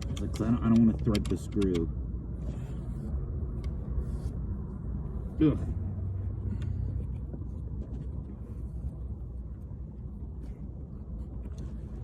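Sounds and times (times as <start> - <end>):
low rumble inside car: 0.0 - 12.0.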